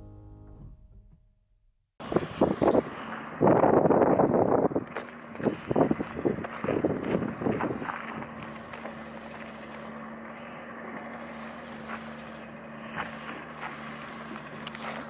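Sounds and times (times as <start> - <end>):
vehicle running hum: 0.0 - 1.2, 2.0 - 15.0.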